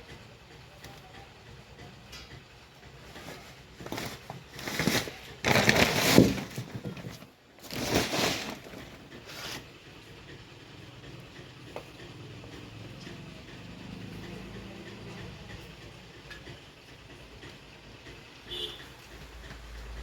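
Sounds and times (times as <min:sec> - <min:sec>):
scraping rustling noises: 0:03.0 - 0:09.8.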